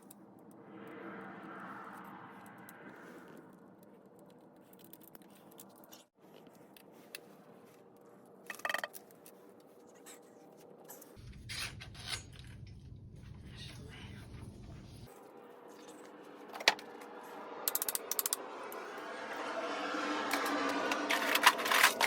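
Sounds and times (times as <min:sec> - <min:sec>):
tools scraping metal parts: 0:08.5 - 0:09.4, 0:10.0 - 0:12.7, 0:17.6 - 0:18.4, 0:20.3 - 0:22.0
metal parts rattling: 0:21.1 - 0:22.0.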